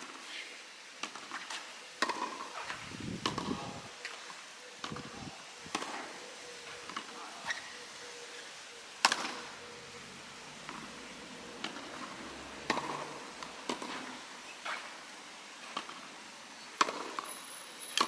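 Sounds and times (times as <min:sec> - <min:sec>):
tennis ball hitting racket and court: 0:02.0 - 0:03.6, 0:09.0 - 0:15.0, 0:16.8 - 0:17.3.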